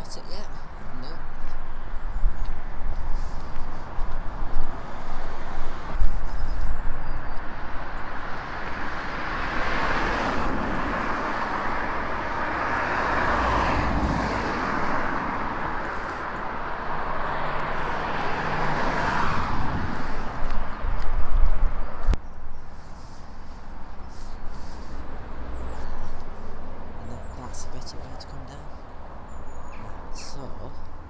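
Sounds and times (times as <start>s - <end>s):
car tyres rushing past: 6.7s - 22.2s.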